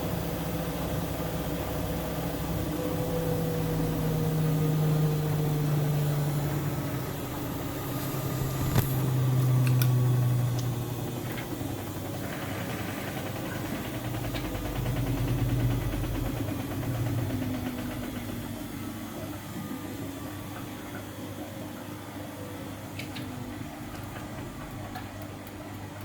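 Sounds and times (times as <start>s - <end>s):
washing machine motor hum: 0.0s - 26.0s.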